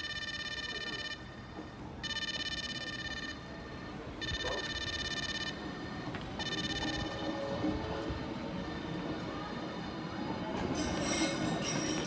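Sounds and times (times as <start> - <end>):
electronic warning tone: 0.0 - 1.2, 2.0 - 3.4, 4.2 - 5.6, 6.4 - 7.4.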